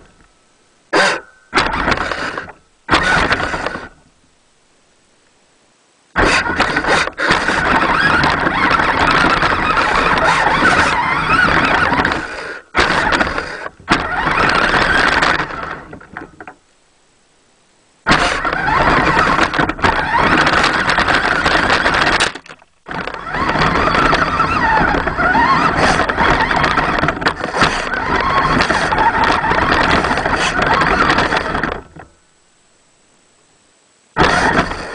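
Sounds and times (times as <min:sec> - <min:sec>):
toy truck motor running: 0:01.0 - 0:04.0, 0:06.2 - 0:16.0, 0:18.1 - 0:32.0, 0:34.2 - 0:34.9.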